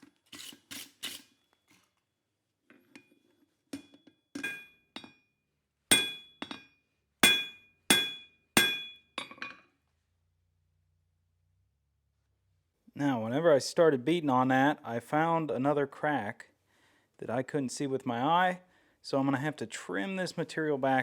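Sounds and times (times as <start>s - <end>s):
hammer clanging on anvil: 3.8s - 5.2s, 5.9s - 9.6s.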